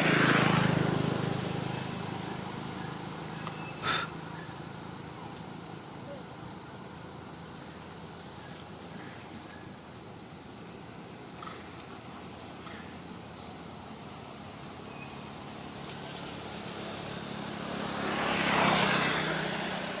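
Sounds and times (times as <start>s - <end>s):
vehicle passing by: 0.0s - 5.8s, 13.8s - 20.0s.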